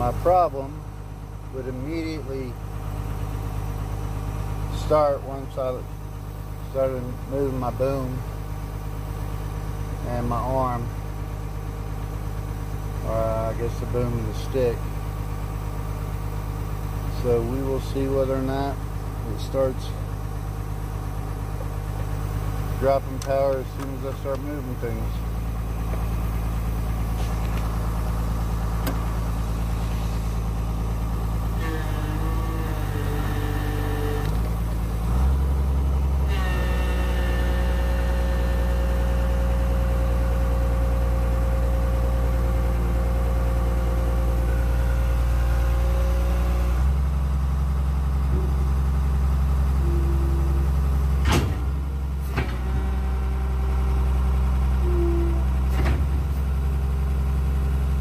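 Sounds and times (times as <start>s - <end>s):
excavator diesel engine under load: 0.0s - 58.0s
steady whine: 12.0s - 14.9s, 15.5s - 39.2s, 48.3s - 52.4s.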